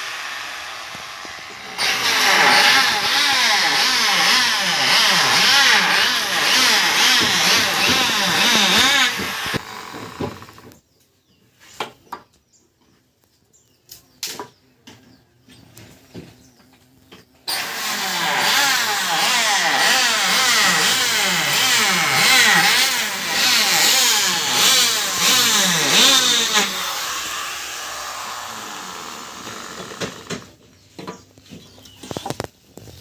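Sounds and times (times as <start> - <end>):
wood planing machine running: 0.0 - 10.8, 17.5 - 30.5.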